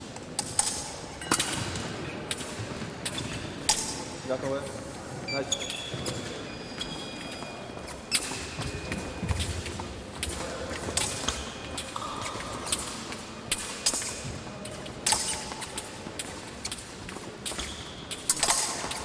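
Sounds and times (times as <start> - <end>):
fencing blades clicking: 18.2 - 19.0.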